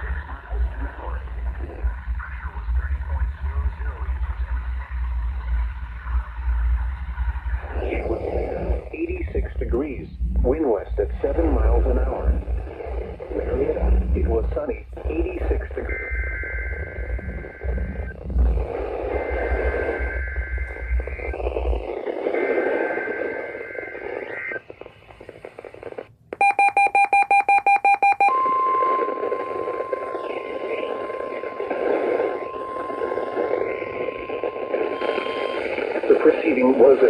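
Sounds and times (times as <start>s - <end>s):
static hiss: 0.0s - 26.2s, 29.0s - 37.0s
pulsed electronic beeping: 13.4s - 24.6s, 26.4s - 37.0s
steady warning alarm tone: 26.4s - 37.0s.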